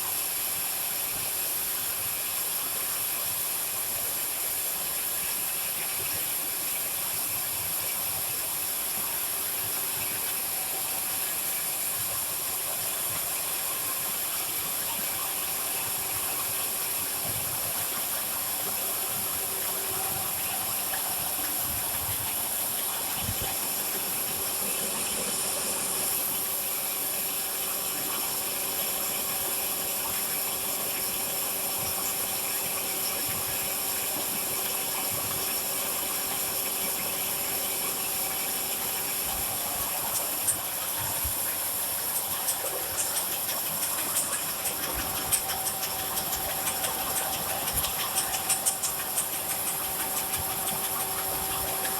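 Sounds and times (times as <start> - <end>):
faint machine hum: 0.0 - 51.9
welding machine hiss: 0.0 - 51.9.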